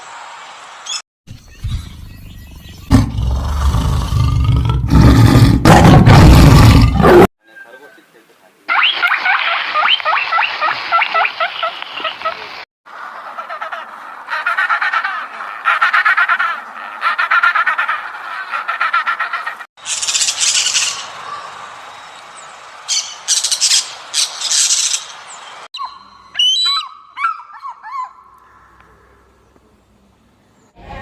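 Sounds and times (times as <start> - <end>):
sharp high-pitched animal calls: 8.7 - 12.2, 25.8 - 28.3
animal trilling calls: 8.7 - 12.4
chirps sweeping in pitch: 25.7 - 28.8.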